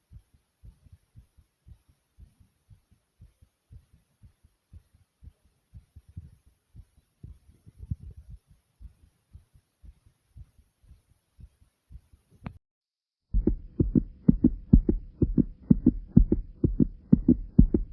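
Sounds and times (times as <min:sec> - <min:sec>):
heart beating fast: 0:00.1 - 0:12.2, 0:13.3 - 0:17.9
faint steady hum: 0:13.4 - 0:17.9.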